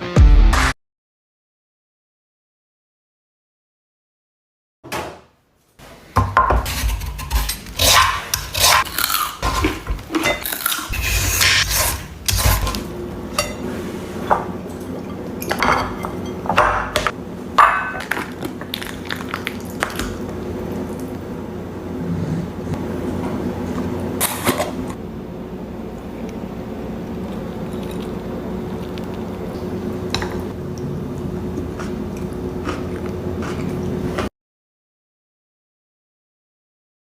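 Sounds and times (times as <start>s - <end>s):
steady hum: 5.8s - 34.3s
utensils and dishes clattering: 6.4s - 19.4s.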